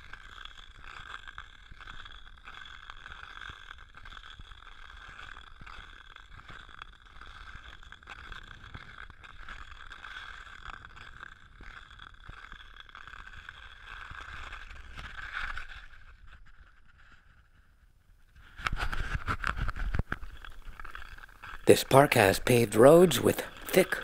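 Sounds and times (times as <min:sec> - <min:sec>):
ice skate blades scraping ice: 0:00.0 - 0:16.5.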